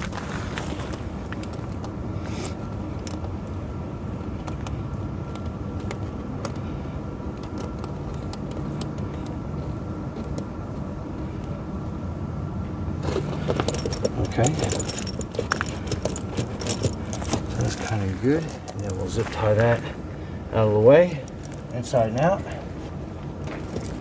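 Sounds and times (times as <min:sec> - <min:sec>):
tractor engine idling: 0:12.9 - 0:24.0
chain links clinking: 0:13.0 - 0:20.0, 0:21.1 - 0:22.8, 0:23.4 - 0:24.0.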